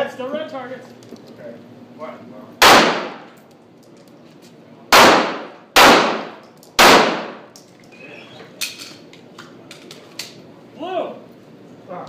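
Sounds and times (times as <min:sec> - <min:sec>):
handgun shots echoing: 0:02.6 - 0:03.3, 0:04.9 - 0:07.6.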